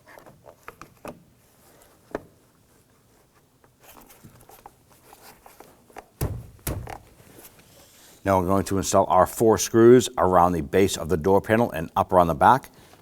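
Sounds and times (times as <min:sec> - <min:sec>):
light rustling handling noise: 0:00.0 - 0:08.2.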